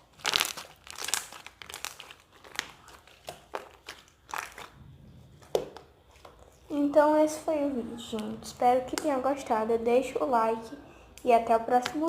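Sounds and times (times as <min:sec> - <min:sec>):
slime clicking and crackling: 0:00.0 - 0:04.8, 0:08.2 - 0:09.2.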